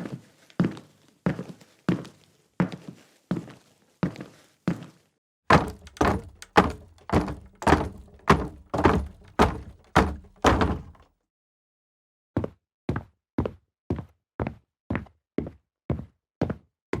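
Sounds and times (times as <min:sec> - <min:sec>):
footsteps on wooden floor: 0:05.5 - 0:11.0.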